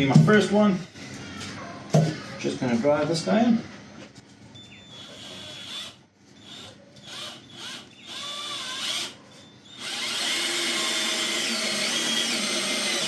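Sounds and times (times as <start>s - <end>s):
power drill driving screw into wood: 9.8s - 13.0s.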